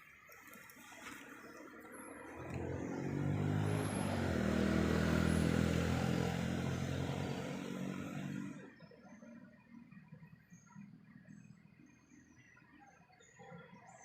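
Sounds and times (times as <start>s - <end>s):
vehicle engine driving past: 0.9s - 9.2s.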